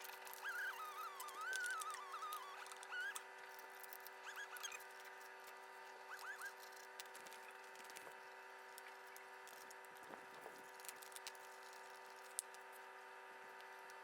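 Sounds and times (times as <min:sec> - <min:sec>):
faint steady hum: 0:00.0 - 0:14.0
faint clicks and ticks: 0:08.8 - 0:12.8.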